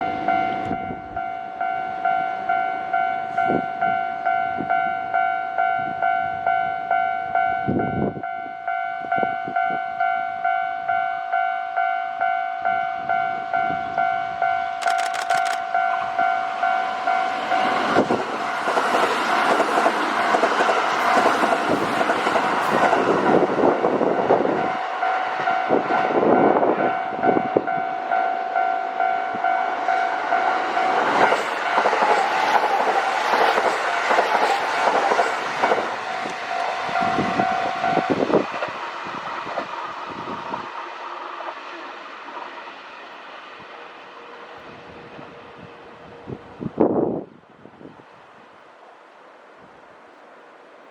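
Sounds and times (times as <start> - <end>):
level-crossing warning bell: 0.0 - 18.4, 22.6 - 39.6
train passing: 0.0 - 50.9.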